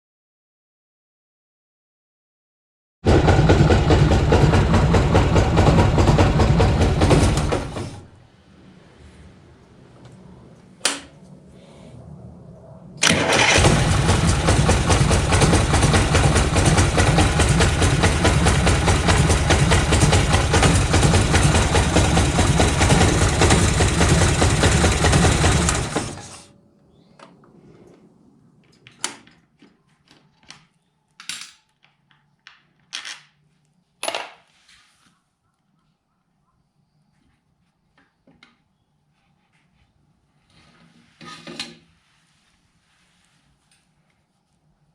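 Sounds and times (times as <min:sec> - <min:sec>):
motorcycle engine running: 0:03.1 - 0:07.8, 0:13.1 - 0:26.4.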